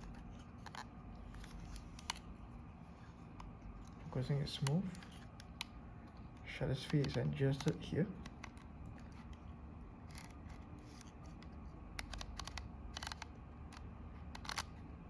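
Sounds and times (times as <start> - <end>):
camera dial metal clicks: 0.0 - 2.2, 6.8 - 9.4, 10.1 - 14.8.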